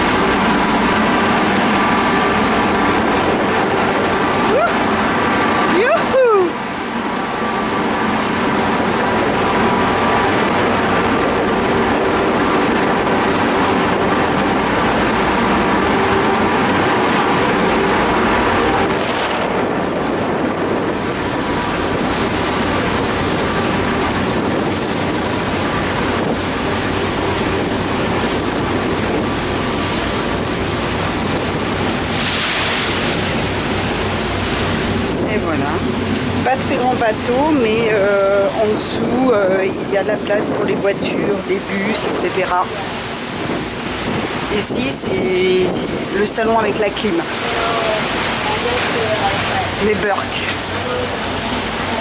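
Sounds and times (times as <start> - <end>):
ferry engines droning: 0.0 - 52.0
water noise: 0.0 - 52.0
wind: 0.0 - 52.0.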